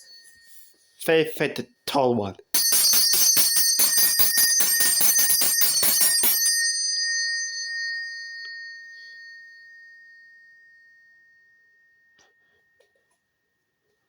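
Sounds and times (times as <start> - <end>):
hand bell ringing: 2.6 - 12.6.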